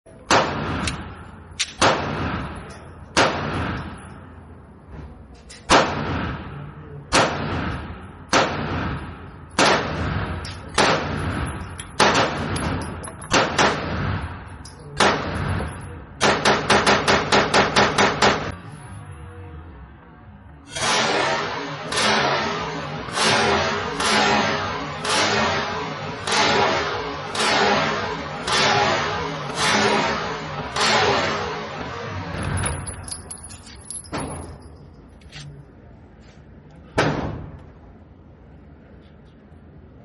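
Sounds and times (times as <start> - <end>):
pistol shots echoing: 0.3 - 4.0, 7.1 - 14.3.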